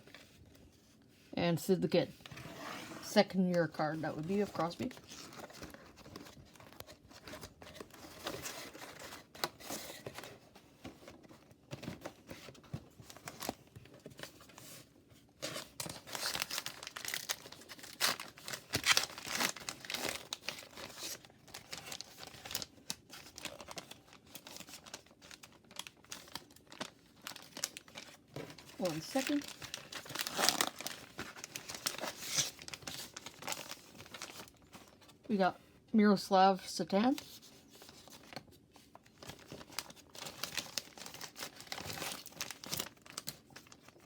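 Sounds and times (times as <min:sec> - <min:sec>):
wrapper crinkling and tearing: 0:15.4 - 0:35.0, 0:39.0 - 0:44.0.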